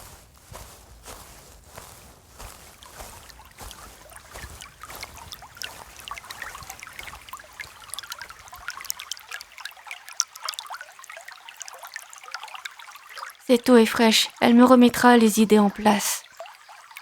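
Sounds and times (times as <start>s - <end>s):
footsteps: 0.0s - 9.5s
stream trickling and babbling: 0.0s - 17.0s.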